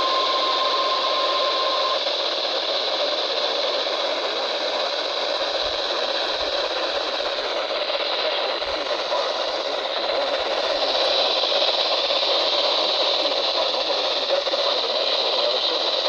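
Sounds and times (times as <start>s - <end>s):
faint steady tone: 0.0s - 2.0s
radio static hiss: 0.0s - 16.0s.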